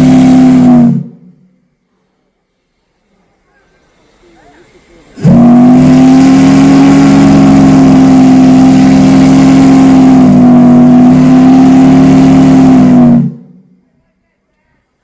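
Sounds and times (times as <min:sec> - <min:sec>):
steam whistle blast: 0:00.0 - 0:01.4, 0:05.2 - 0:13.6.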